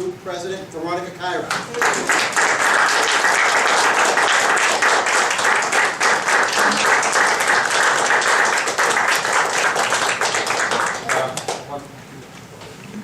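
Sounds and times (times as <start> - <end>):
crowd applauding: 1.5 - 11.7.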